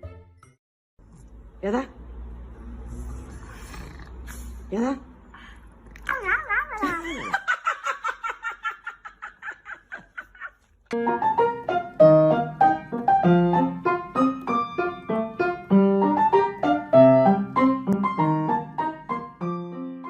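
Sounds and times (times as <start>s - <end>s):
bouncy piano music: 11.0s - 20.0s.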